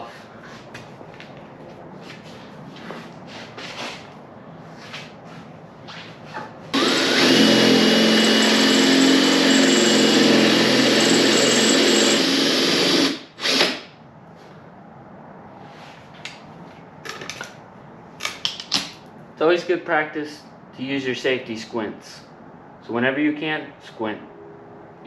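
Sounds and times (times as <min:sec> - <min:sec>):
power drill whining: 0:06.7 - 0:13.9.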